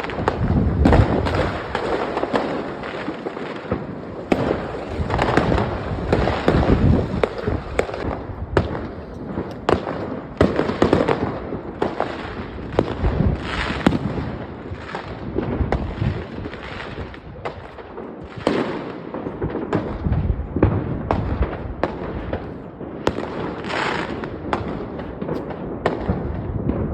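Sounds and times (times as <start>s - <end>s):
firework shells bursting: 0.0s - 17.7s
firework crackling: 0.0s - 26.9s.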